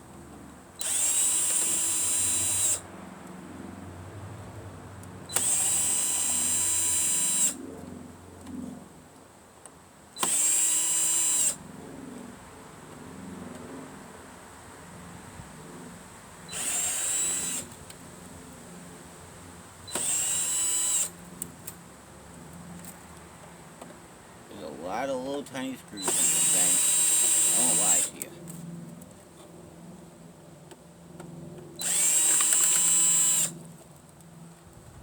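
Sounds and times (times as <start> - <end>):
power drill whining: 0.8 - 2.8, 5.3 - 7.6, 10.2 - 11.6, 16.5 - 17.8, 19.9 - 21.2, 26.0 - 28.3, 31.8 - 33.6.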